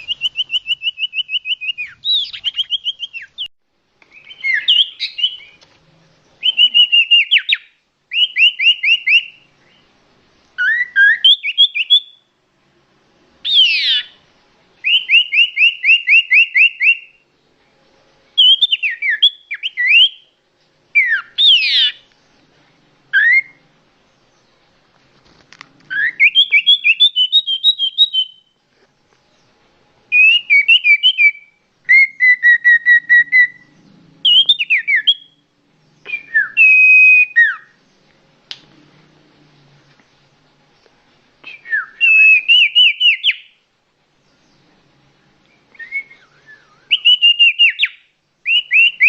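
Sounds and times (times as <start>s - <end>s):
bird whistling and trilling: 0.0s - 3.5s, 4.1s - 5.6s, 6.4s - 9.8s, 10.6s - 12.2s, 13.4s - 14.2s, 14.8s - 17.2s, 18.4s - 20.3s, 21.0s - 22.0s, 23.1s - 23.6s, 25.9s - 28.5s, 30.1s - 35.4s, 36.0s - 37.8s, 41.5s - 43.6s, 45.7s - 49.0s.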